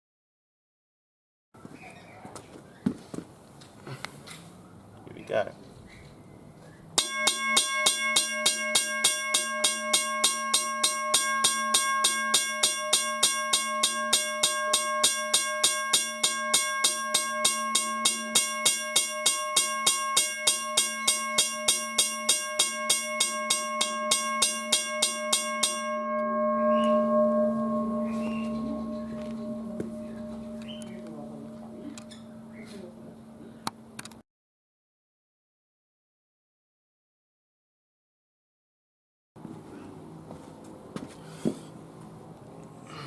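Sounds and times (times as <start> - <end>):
railway crossing bell ringing: 7.0 - 34.0.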